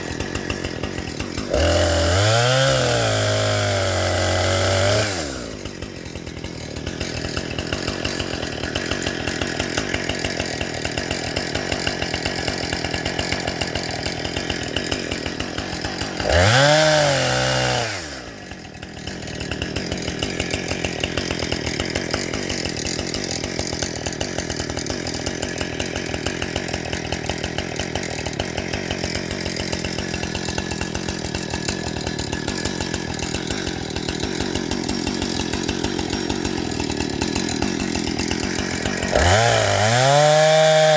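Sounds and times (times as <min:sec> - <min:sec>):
small engine running: 0:00.0 - 0:40.9.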